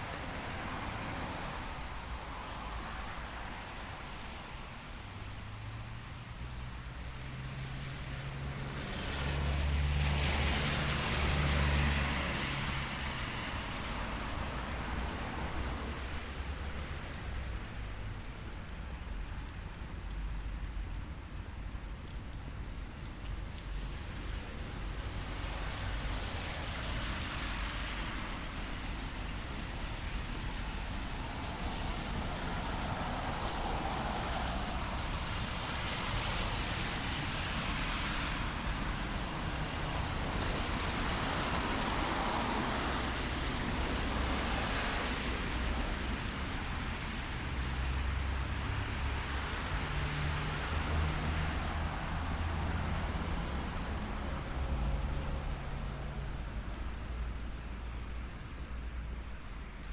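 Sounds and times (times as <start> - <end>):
car tyres hissing on wet street: 0.0 - 59.9
steady rain: 0.0 - 59.9.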